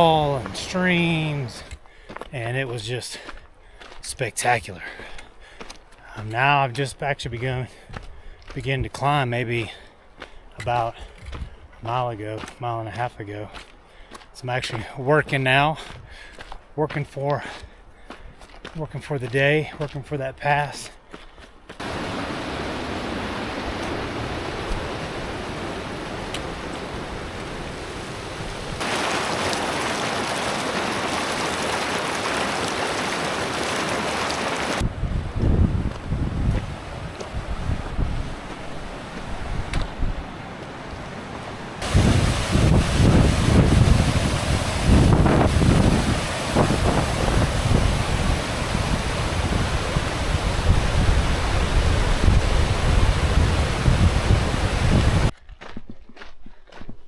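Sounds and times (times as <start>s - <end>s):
rushing stream or waterfall: 0.0s - 7.6s, 21.7s - 55.3s
wind buffeting microphone: 34.8s - 40.3s, 41.8s - 55.3s.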